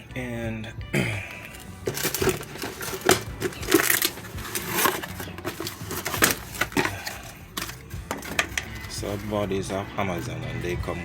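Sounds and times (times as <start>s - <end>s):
rustling: 1.5s - 9.6s
metallic clinks and knocks: 1.8s - 9.2s.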